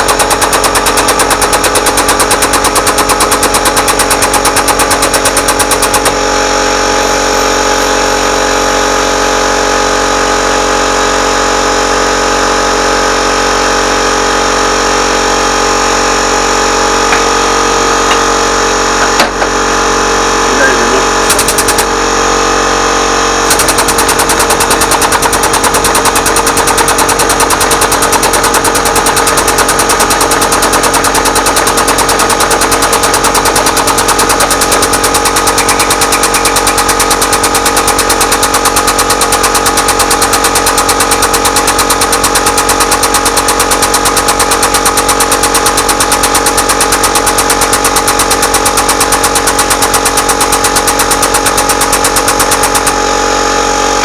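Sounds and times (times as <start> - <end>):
air compressor pulsing: 0.0 - 54.0
machinery hum: 5.2 - 10.5, 13.0 - 30.8.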